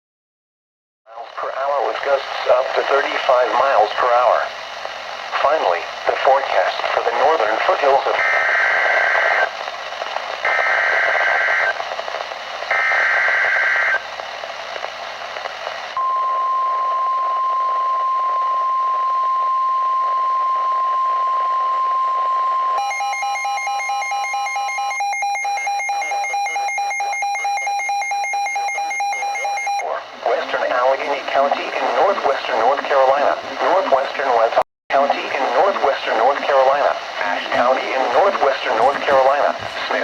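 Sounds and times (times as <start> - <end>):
steady alarm tone: 16.0 - 29.8.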